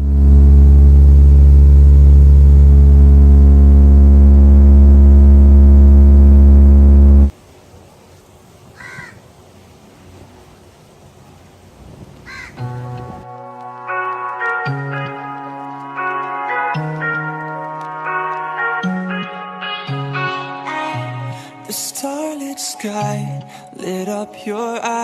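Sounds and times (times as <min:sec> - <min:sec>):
loud low hum: 0:00.0 - 0:07.3
crow cawing: 0:08.8 - 0:09.2, 0:12.2 - 0:12.6.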